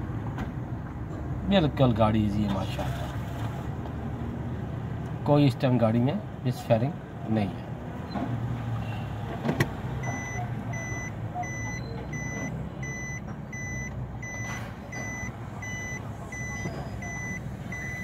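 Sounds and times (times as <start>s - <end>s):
reverse warning beeper: 10.0s - 18.0s.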